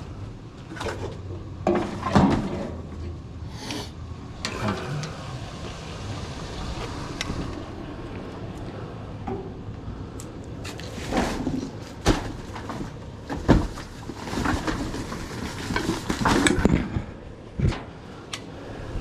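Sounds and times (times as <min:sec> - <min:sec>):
low steady rumble: 0:00.0 - 0:19.0
scraping and rustling: 0:10.5 - 0:16.8.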